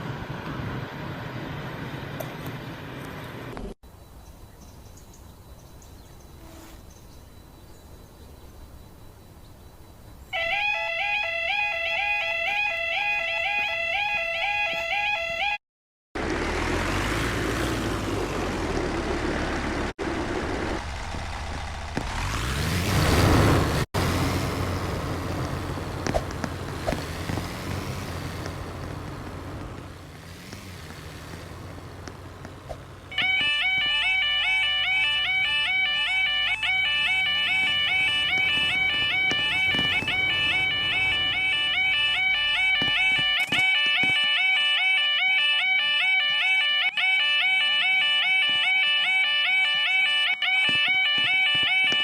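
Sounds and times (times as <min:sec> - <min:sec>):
vehicle engine humming: 0:00.0 - 0:03.8, 0:16.2 - 0:52.0
road noise: 0:00.0 - 0:15.5, 0:16.2 - 0:52.0.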